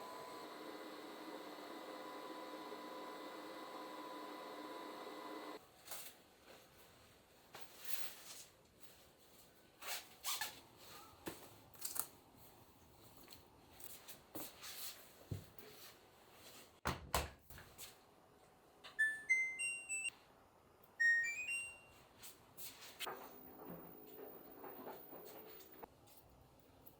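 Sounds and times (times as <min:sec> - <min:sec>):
electronic beep melody: 0:19.0 - 0:20.1, 0:21.0 - 0:22.0.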